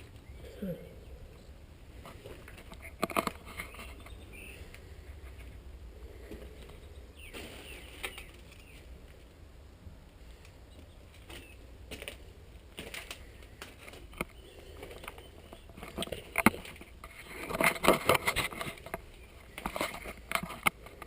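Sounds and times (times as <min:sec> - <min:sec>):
footsteps on debris: 0:01.9 - 0:09.3, 0:10.1 - 0:20.8
knocks and crunches of debris: 0:07.2 - 0:09.2, 0:11.1 - 0:21.0.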